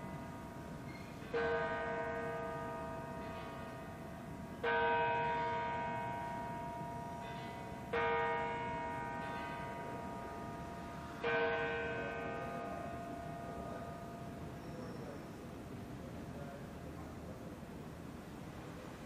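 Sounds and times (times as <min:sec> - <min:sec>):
church bell tolling: 0:00.0 - 0:15.4.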